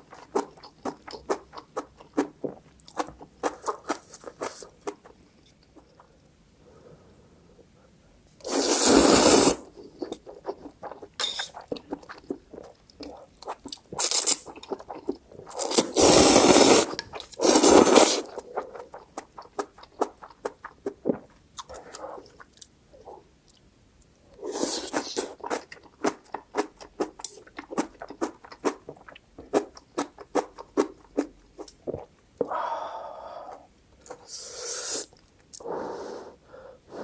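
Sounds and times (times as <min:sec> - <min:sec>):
loud slurping bursts: 0:08.4 - 0:09.6, 0:15.6 - 0:18.3.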